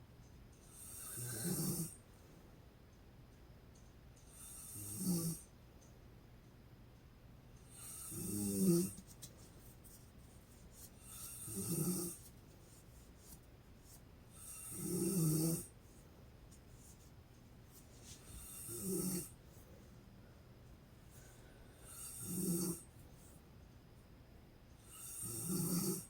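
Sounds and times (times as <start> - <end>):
woman snoring: 0.7 - 2.0, 4.3 - 5.4, 7.7 - 9.0, 11.1 - 12.2, 14.4 - 15.7, 18.4 - 19.3, 21.8 - 22.8, 24.8 - 26.0.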